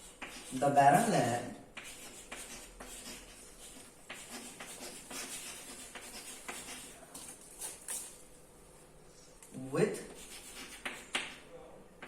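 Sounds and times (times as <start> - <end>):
pen scratching while writing: 0.0 - 1.1, 1.8 - 6.9, 10.2 - 11.4.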